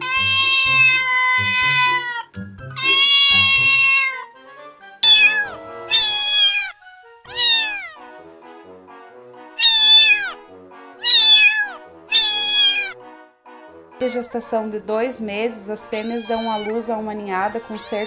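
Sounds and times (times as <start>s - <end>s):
cat meowing: 0.0s - 4.3s, 5.0s - 8.1s, 9.6s - 10.4s, 11.0s - 13.0s, 15.9s - 16.9s, 17.8s - 18.0s
soft background music: 0.0s - 18.0s.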